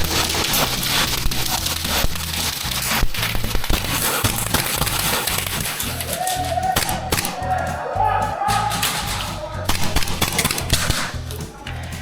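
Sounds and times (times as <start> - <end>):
noisy hiss: 0.0 - 7.4
sharp clicks: 0.0 - 7.8, 8.4 - 11.9
music with heavy bassline: 0.0 - 12.0.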